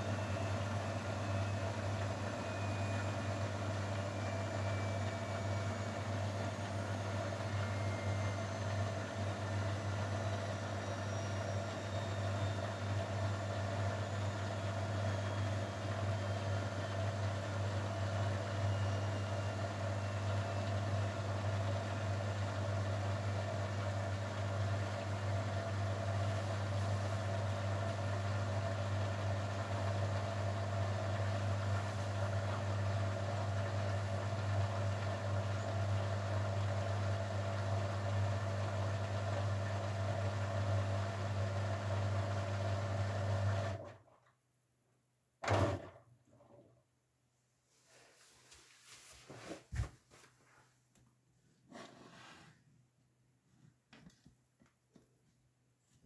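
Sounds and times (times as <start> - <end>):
washing machine humming: 0.0 - 44.0.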